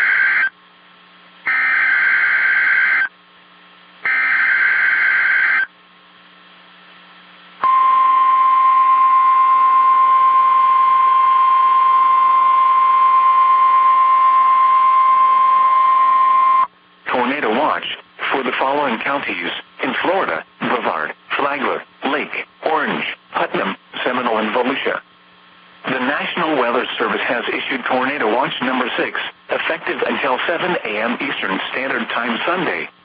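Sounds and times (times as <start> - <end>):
steady warning alarm tone: 0.0 - 0.6, 1.5 - 3.1, 4.0 - 5.7, 7.6 - 16.7.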